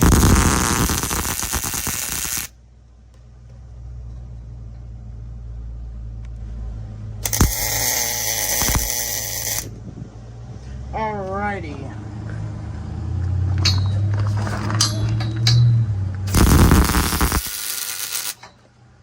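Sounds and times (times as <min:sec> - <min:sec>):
welder arc crackling: 0:00.0 - 0:02.5, 0:07.2 - 0:09.7, 0:16.3 - 0:18.5.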